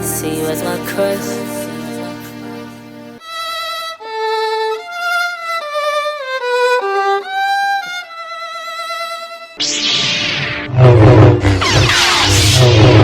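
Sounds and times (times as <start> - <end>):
solo violin melody: 0.0 - 9.6.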